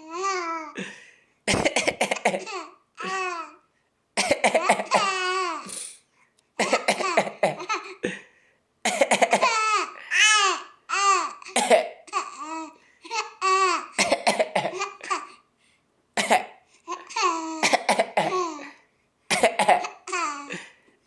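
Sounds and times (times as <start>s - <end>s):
person coughing: 0.8s - 3.2s, 4.2s - 6.0s, 6.6s - 8.3s, 8.9s - 9.6s, 11.5s - 12.0s, 14.0s - 14.9s, 16.2s - 16.6s, 17.6s - 18.5s, 19.3s - 20.8s.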